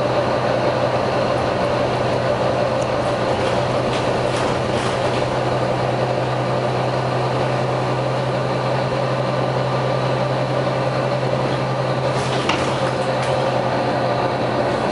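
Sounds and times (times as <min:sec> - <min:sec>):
bus engine droning: 0:00.0 - 0:14.9.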